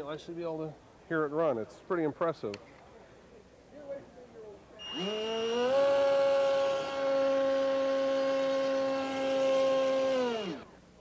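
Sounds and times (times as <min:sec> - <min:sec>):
electric motor propeller whine: 0:04.8 - 0:10.7.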